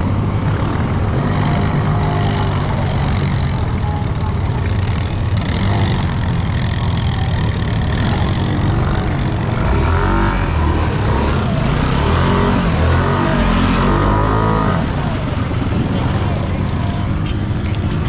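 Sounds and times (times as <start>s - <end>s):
vehicle engine revving: 0.0s - 18.0s.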